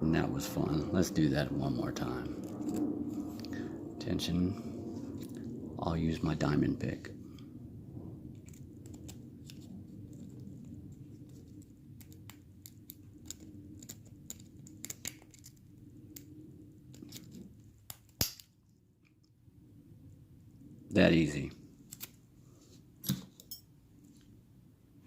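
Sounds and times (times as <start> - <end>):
lock pick clicking and scratching: 11.3 - 18.5.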